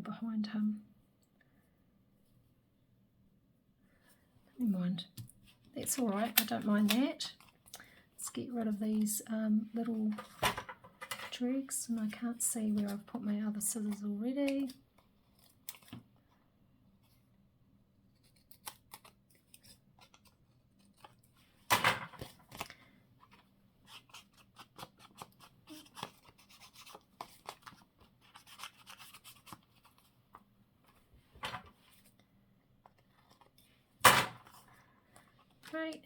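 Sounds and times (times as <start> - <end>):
scissors cutting paper: 23.9 - 30.0.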